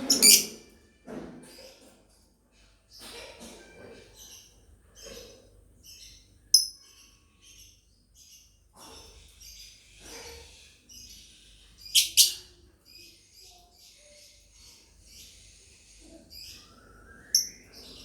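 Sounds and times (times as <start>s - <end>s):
loud shrill chirps: 0.0s - 0.5s
lovebirds chirping: 0.0s - 0.5s, 5.9s - 7.6s, 11.0s - 13.6s, 16.4s - 18.0s.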